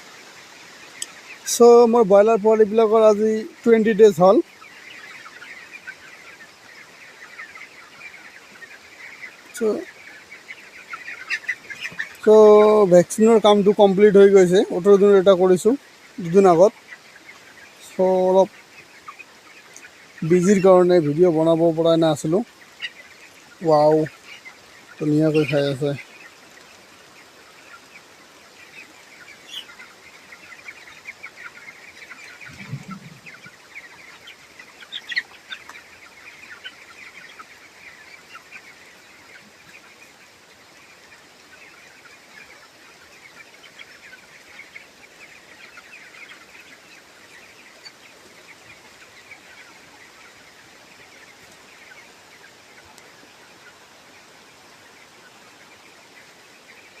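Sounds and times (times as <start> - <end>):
chicks peeping and cheeping: 0.0 - 57.0
brief low sound: 32.5 - 33.4.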